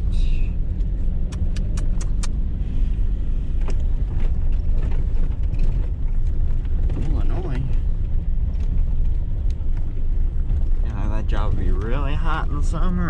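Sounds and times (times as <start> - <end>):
sharp clicks: 1.2 - 2.4.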